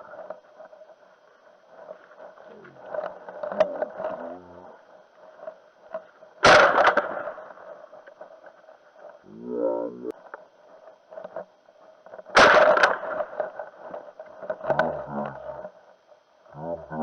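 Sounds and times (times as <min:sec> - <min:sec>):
shotgun shot: 0:06.4 - 0:07.4, 0:12.3 - 0:13.3.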